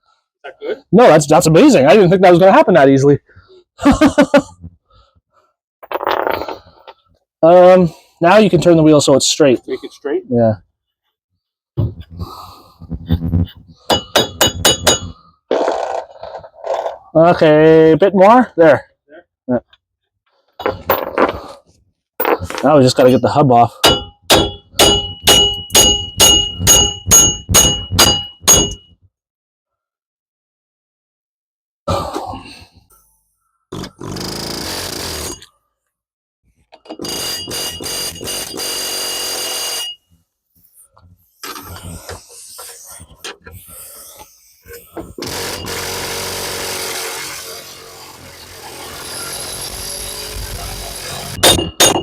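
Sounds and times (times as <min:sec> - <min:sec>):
hammer striking steel hub: 0:13.9 - 0:15.2, 0:23.8 - 0:28.8, 0:51.4 - 0:52.0.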